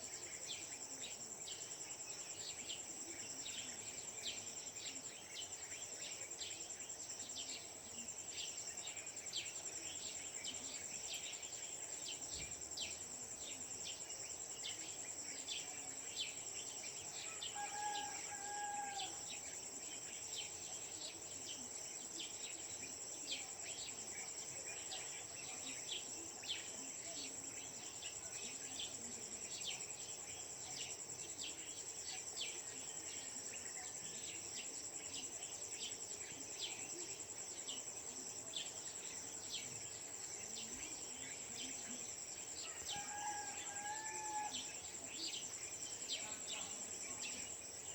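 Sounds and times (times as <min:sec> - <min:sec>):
insect drone: 0:00.0 - 0:47.9
rooster crowing: 0:17.3 - 0:19.3, 0:42.6 - 0:44.7.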